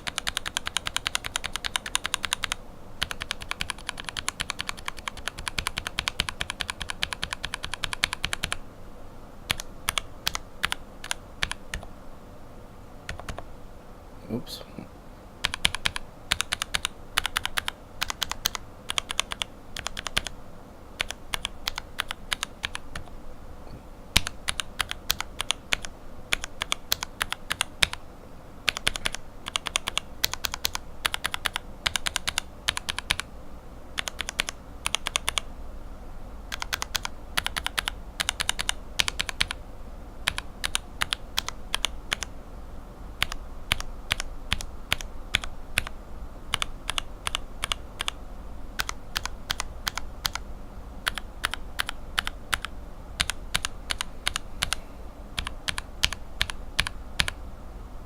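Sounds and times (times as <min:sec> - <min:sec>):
mechanical keyboard typing: 0:00.0 - 0:08.6, 0:09.5 - 0:11.9, 0:13.1 - 0:13.4, 0:15.4 - 0:20.4, 0:21.0 - 0:23.1, 0:24.1 - 0:28.0, 0:28.7 - 0:33.3, 0:34.0 - 0:35.5, 0:36.5 - 0:39.6, 0:40.2 - 0:42.3, 0:43.2 - 0:48.2, 0:48.8 - 0:50.4, 0:51.0 - 0:54.8, 0:55.4 - 0:57.4.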